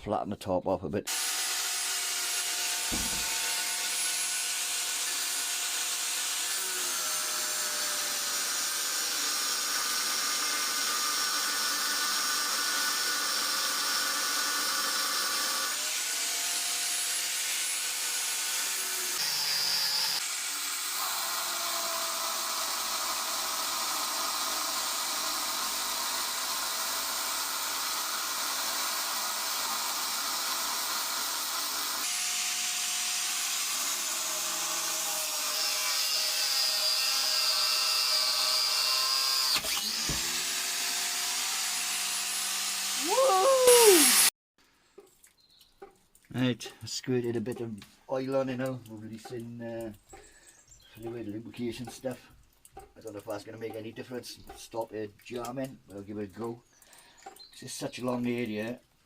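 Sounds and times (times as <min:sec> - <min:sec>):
angle grinder cutting steel: 0:01.1 - 0:44.4.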